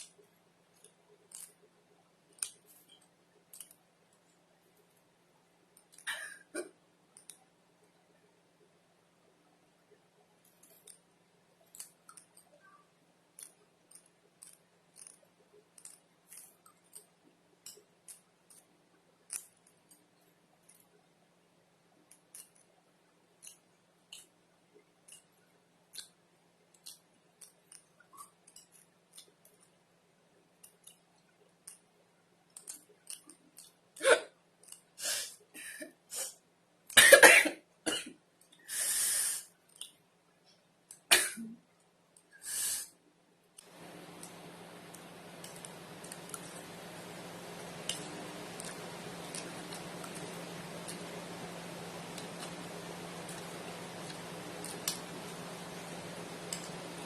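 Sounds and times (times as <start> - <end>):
woman coughing: 6.1 - 6.7, 34.0 - 34.3, 37.0 - 38.1, 41.1 - 41.6.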